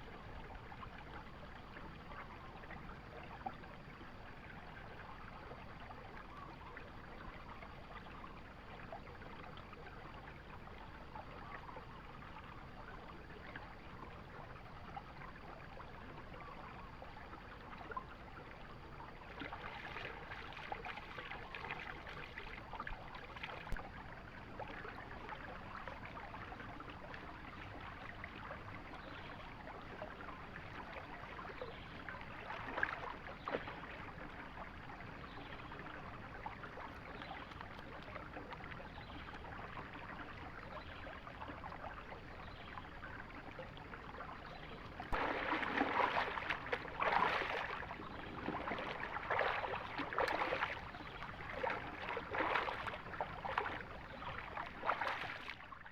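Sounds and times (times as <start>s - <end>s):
river water running: 0.0s - 55.9s
water splashing and sloshing: 16.9s - 55.9s.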